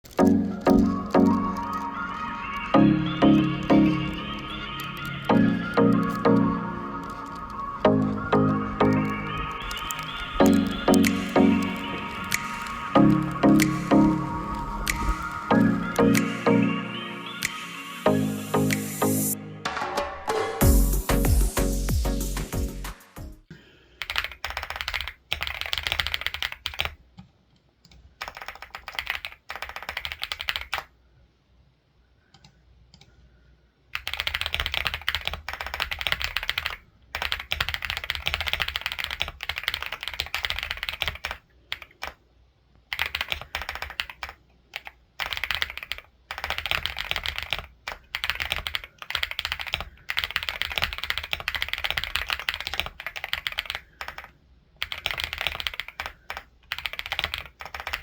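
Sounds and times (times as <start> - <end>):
typing on computer keyboard: 0.0 - 1.9, 3.3 - 7.6, 8.8 - 13.9, 24.0 - 30.9, 34.0 - 42.2, 42.9 - 58.0.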